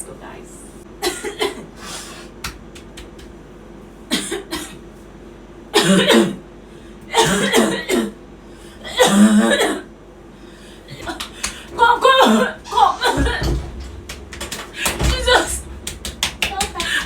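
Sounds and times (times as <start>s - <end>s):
rough coughing: 5.8s - 6.4s, 7.1s - 8.2s, 8.8s - 9.9s, 10.9s - 14.0s.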